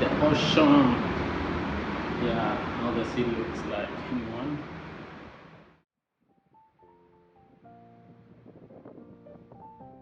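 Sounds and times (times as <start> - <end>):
music with sustained notes: 6.3 - 10.0.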